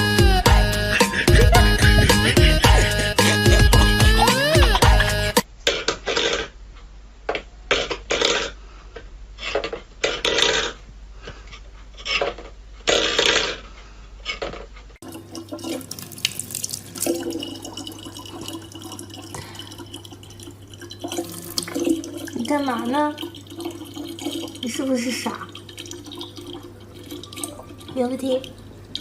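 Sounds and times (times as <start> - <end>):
water running from tap: 15.0 - 29.0
water splashing in sink: 15.0 - 29.0.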